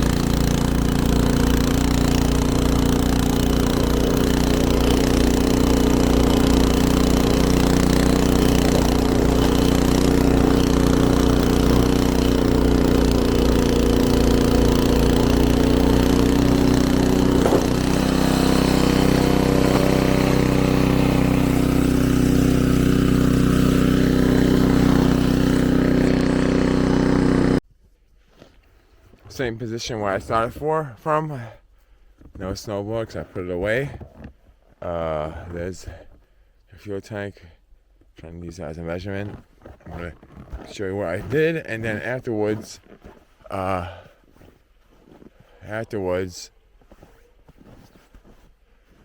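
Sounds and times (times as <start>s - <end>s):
snowblower engine running: 0.0s - 27.6s, 39.3s - 44.5s.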